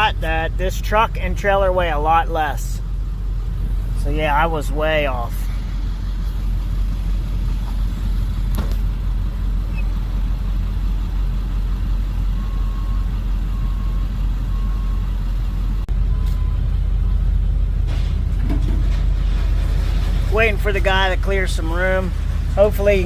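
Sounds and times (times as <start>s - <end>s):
truck engine idling: 0.0s - 23.0s
faint short beeps: 16.1s - 16.6s.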